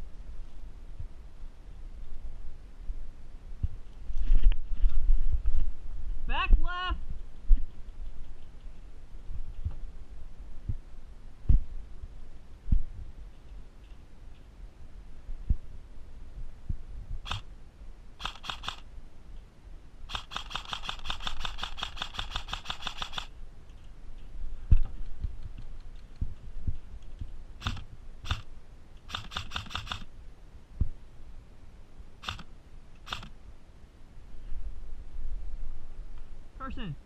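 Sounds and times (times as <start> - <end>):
dull low thumps: 10.5 - 11.9, 12.6 - 13.2, 15.3 - 15.7
airsoft gun firing: 18.2 - 18.8, 20.1 - 23.3, 27.6 - 28.5, 29.1 - 30.1.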